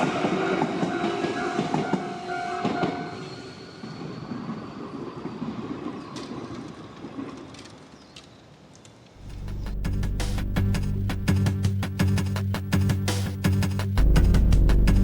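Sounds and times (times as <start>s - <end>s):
train wheels rolling on rails: 0.0s - 10.9s
steady tone: 14.0s - 15.0s.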